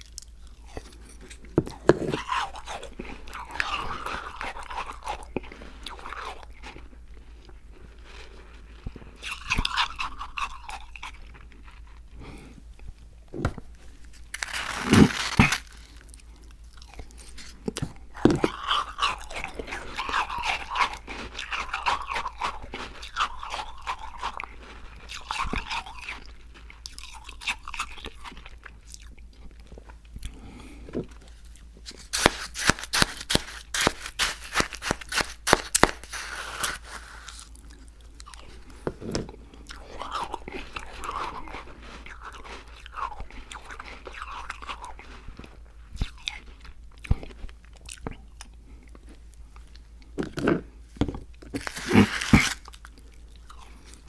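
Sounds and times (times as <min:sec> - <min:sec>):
chewing and crunching ice: 0:00.0 - 0:13.0, 0:13.8 - 0:54.0
wet mouth sounds: 0:51.5 - 0:52.8.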